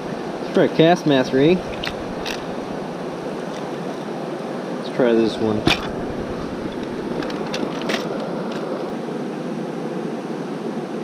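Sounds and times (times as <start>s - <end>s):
fishing tackle clicks: 1.7s - 2.5s.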